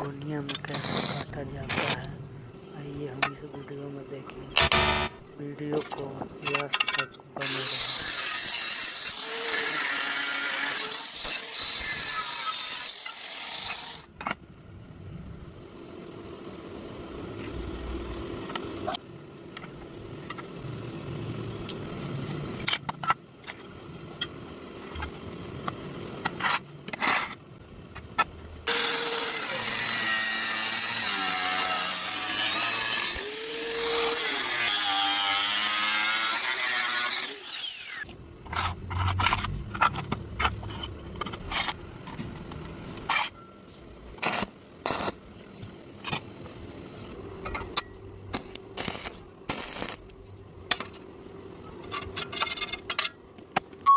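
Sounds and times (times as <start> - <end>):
angle grinder cutting steel: 0.5 - 2.1, 6.4 - 14.1, 28.6 - 41.8.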